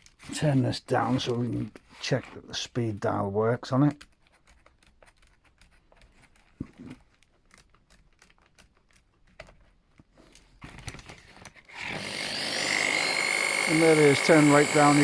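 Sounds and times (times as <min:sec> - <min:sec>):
electric drill whine: 0:11.7 - 0:15.0.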